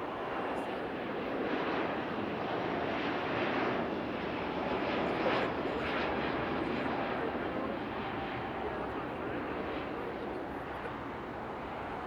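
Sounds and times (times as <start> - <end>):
jet airliner engines roaring: 0.0 - 12.0.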